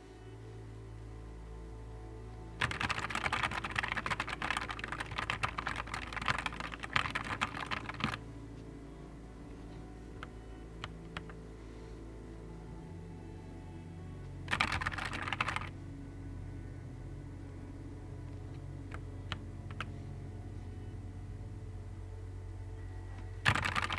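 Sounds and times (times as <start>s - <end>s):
fast typing on mechanical keyboard: 2.6s - 8.2s, 14.5s - 15.7s, 23.4s - 23.9s.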